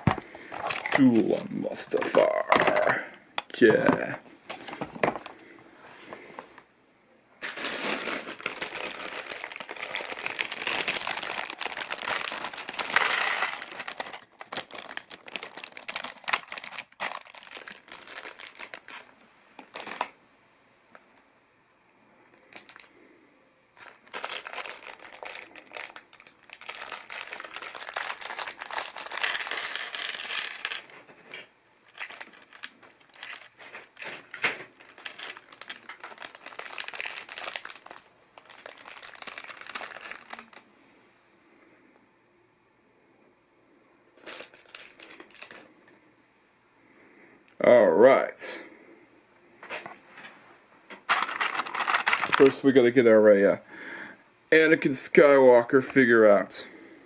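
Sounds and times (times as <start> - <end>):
plastic bags crinkling: 0.0 - 5.5, 7.4 - 20.2, 22.4 - 23.0, 23.8 - 40.7, 44.2 - 45.7, 51.0 - 53.0.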